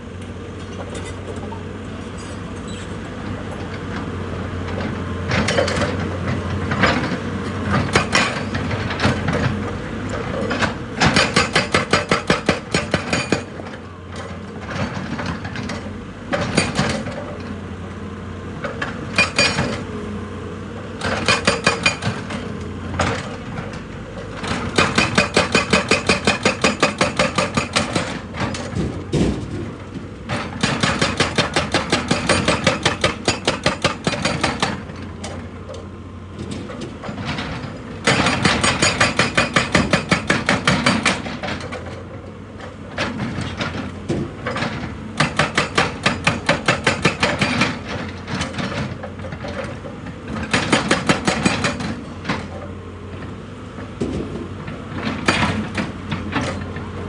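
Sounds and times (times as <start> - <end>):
engine hum: 0.0 - 57.0
machine hammering rock: 6.7 - 9.3, 10.4 - 13.6, 16.3 - 17.1, 18.8 - 19.9, 21.0 - 23.3, 24.4 - 34.9, 38.0 - 41.4, 45.2 - 48.5, 50.4 - 52.1.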